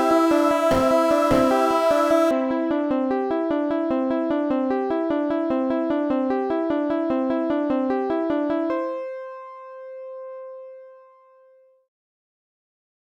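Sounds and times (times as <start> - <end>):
piano-like keyboard run: 0.0 - 6.3.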